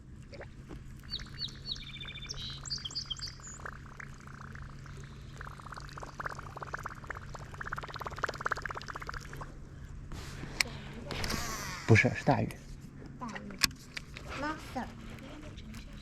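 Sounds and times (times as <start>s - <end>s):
steady low hum: 0.0s - 16.0s
bird chirping: 1.0s - 6.1s.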